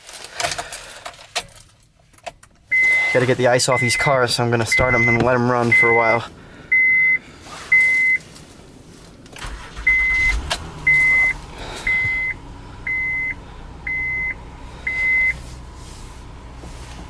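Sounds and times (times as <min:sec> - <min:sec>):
car warning chime beeping: 0:02.6 - 0:08.3, 0:09.4 - 0:15.5
engine cranking and idling: 0:07.8 - 0:17.0.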